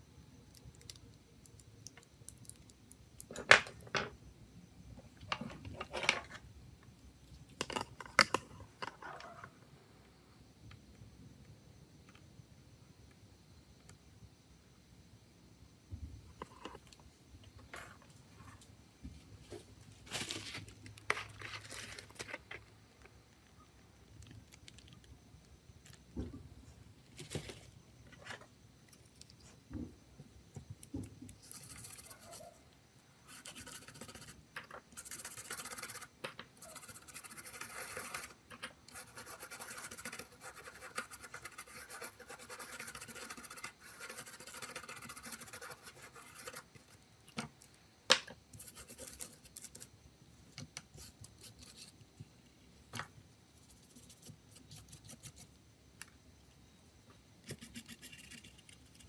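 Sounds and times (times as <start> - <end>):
scratching and scrubbing on hard object: 31.4 - 32.6, 33.3 - 46.9, 57.4 - 59.0.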